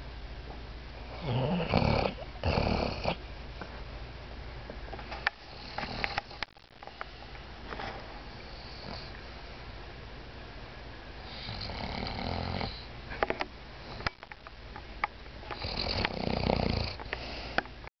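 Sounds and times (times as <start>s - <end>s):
dog snoring: 1.1s - 3.2s, 5.5s - 6.5s, 8.4s - 9.2s, 11.2s - 12.9s, 15.6s - 17.5s.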